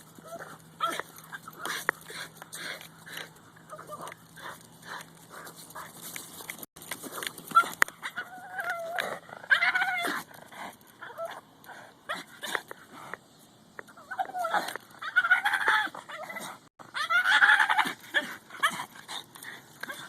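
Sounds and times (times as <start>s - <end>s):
dog yipping and whining: 0.2s - 1.6s, 7.5s - 10.2s, 13.9s - 18.9s
dog pitched calls: 13.9s - 20.0s.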